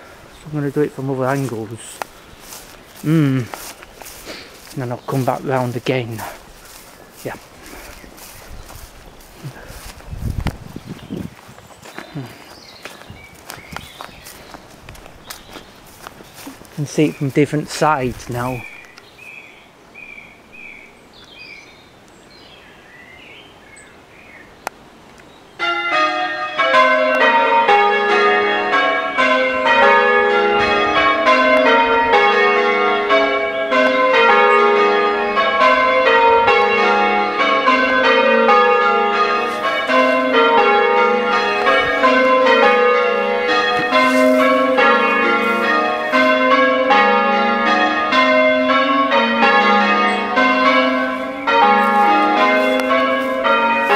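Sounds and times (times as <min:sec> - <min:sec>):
church bells change ringing: 0:00.0 - 0:10.0, 0:15.4 - 0:18.8, 0:25.6 - 0:53.9.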